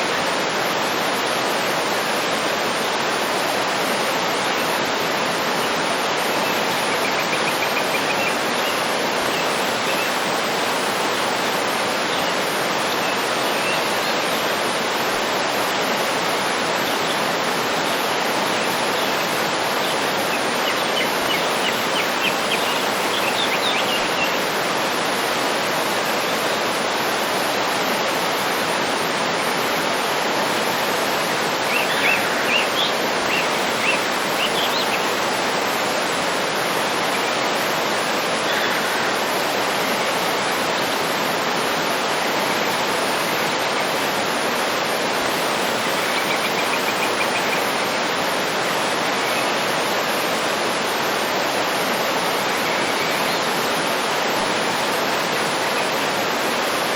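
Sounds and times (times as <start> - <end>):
waterfall rushing: 0.0 - 56.9.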